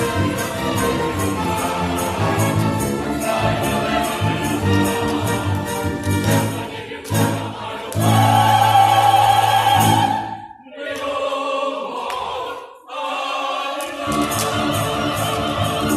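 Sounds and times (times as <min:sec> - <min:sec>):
person singing with vibrato: 0:06.4 - 0:15.9.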